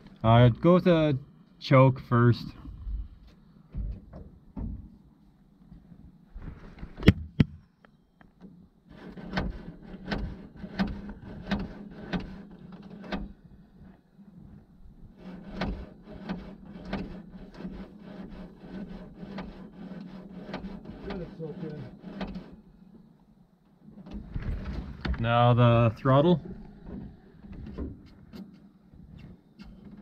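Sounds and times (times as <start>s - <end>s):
low hum: 0.0s - 8.4s.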